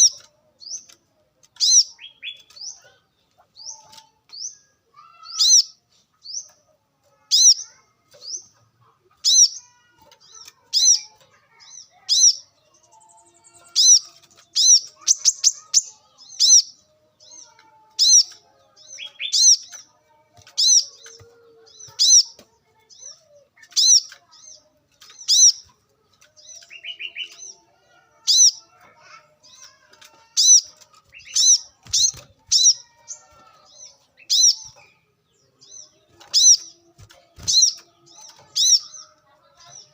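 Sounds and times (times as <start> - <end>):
bird chirping: 0.0 - 39.9.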